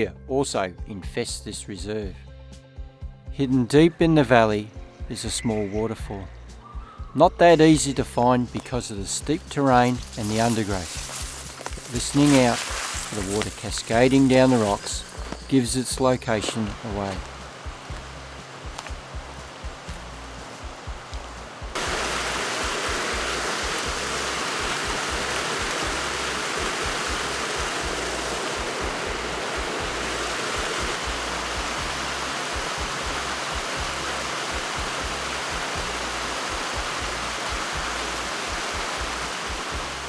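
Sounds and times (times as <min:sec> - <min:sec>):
waterfall rushing over rocks: 0:09.7 - 0:40.0.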